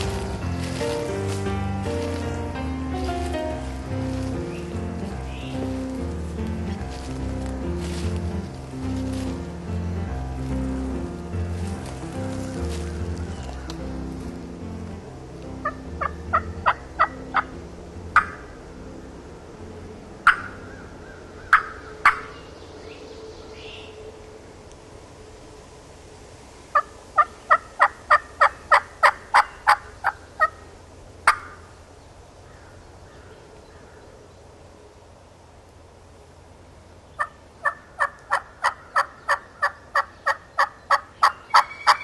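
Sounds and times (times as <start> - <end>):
wild turkey yelping: 15.6 - 18.6, 20.2 - 22.5, 26.7 - 31.7, 37.2 - 42.0.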